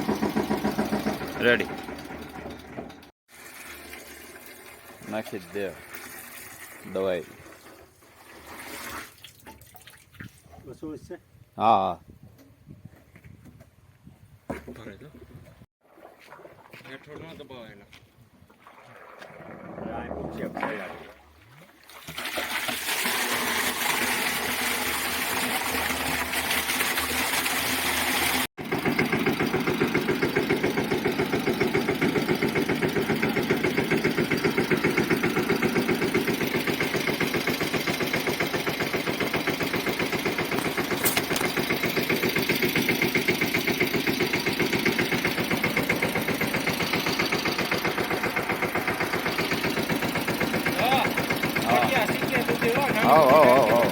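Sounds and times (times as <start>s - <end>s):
tractor engine pulsing: 0.0s - 3.1s, 28.6s - 53.9s.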